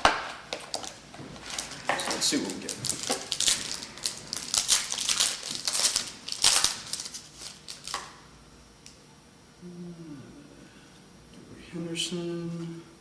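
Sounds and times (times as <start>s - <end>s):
plastic wrapping torn and crinkled: 0.0s - 8.2s.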